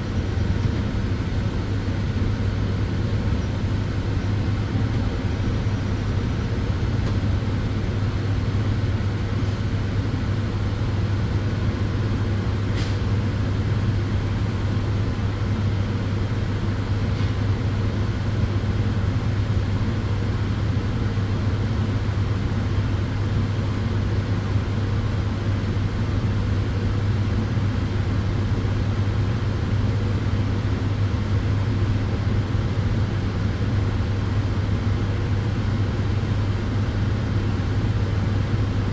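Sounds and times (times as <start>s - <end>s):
constant low hum: 0.0s - 38.9s.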